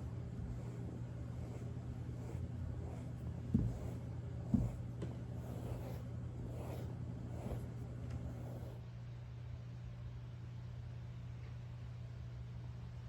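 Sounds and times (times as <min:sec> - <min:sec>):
steady low hum: 0:00.0 - 0:13.0
dull thumps: 0:03.4 - 0:05.2.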